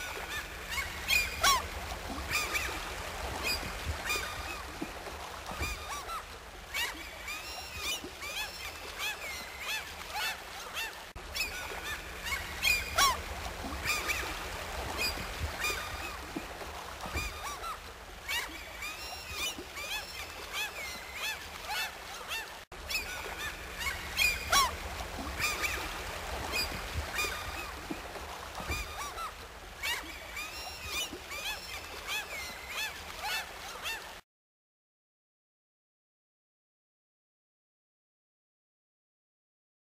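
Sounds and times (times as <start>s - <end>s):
many birds calling: 5.6s - 16.4s, 17.0s - 34.1s.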